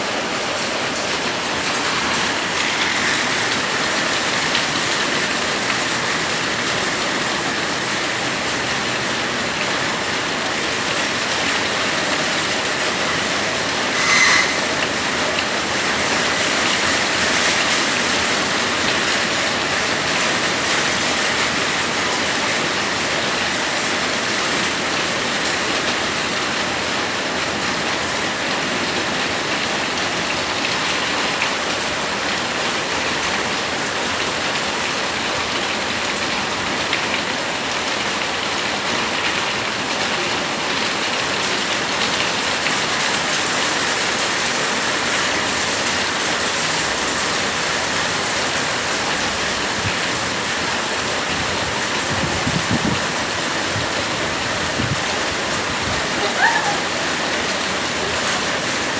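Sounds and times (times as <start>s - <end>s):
heavy rain pouring: 0.0s - 58.9s.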